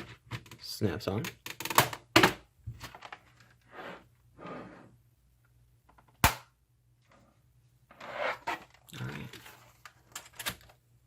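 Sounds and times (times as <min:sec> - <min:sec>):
soft scraping: 0:03.6 - 0:05.0
sharp plastic snap: 0:06.2 - 0:06.5.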